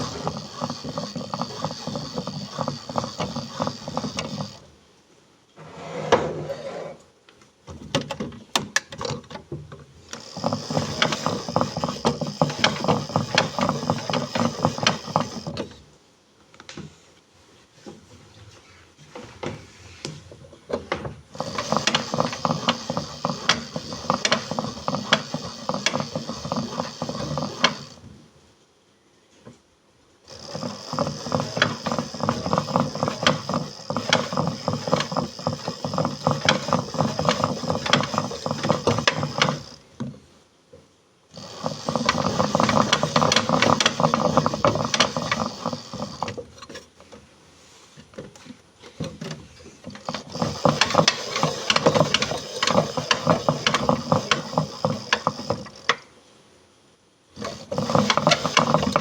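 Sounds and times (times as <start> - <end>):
washing machine rattling: 30.3 - 39.8, 41.6 - 46.2, 49.9 - 55.8, 57.4 - 59.0.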